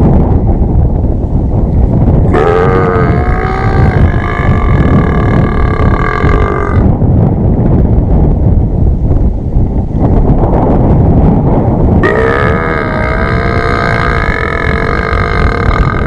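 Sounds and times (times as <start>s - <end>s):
wind rumble on microphone: 0.0s - 16.0s
man burping: 2.3s - 6.9s, 12.0s - 16.0s.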